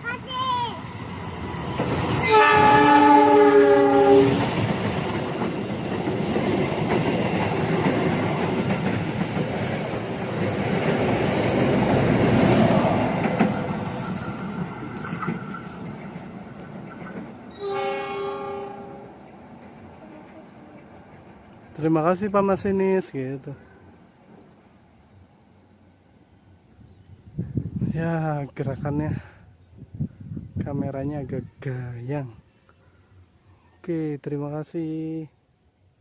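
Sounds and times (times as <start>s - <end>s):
train horn: 2.2s - 4.5s, 17.5s - 19.2s
train carriages clattering on rails: 4.0s - 22.3s.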